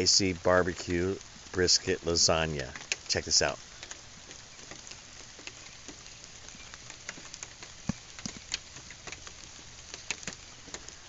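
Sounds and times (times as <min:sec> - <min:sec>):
rain hissing: 0:00.0 - 0:11.0.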